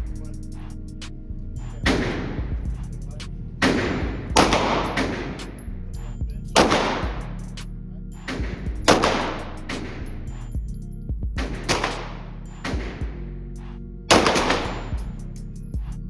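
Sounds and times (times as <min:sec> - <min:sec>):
background music: 0:00.0 - 0:16.0
gunshots with echo: 0:01.9 - 0:02.8, 0:03.6 - 0:05.7, 0:06.6 - 0:07.4, 0:08.3 - 0:10.2, 0:11.4 - 0:13.3, 0:14.1 - 0:15.2.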